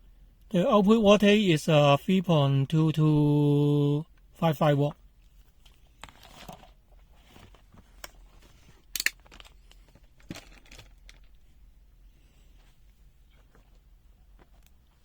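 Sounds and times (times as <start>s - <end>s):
test probes clicking: 9.0s - 9.2s.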